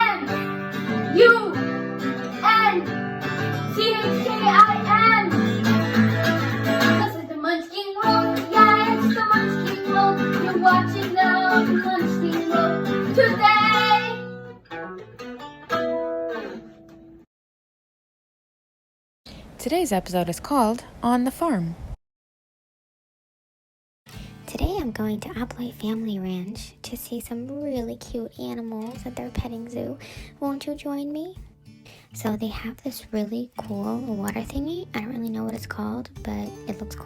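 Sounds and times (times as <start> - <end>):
strummed acoustic guitar: 0.0 - 7.4, 8.0 - 17.2, 24.1 - 37.0
person singing: 3.6 - 7.4, 8.0 - 14.3.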